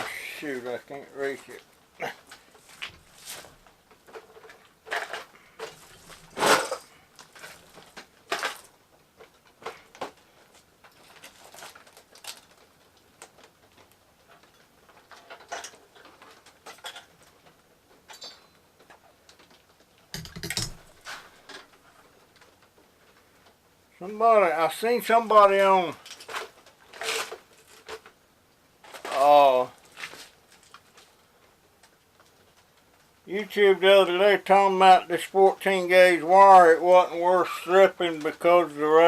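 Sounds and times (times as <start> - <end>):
objects being handled: 0.0 - 23.6, 25.7 - 28.2, 28.8 - 33.2.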